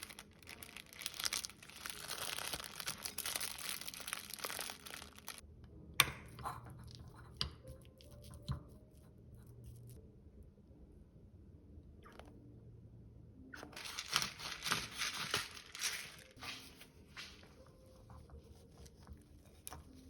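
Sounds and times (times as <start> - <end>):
rustling and crinkling: 0.0 - 5.4, 13.8 - 20.0.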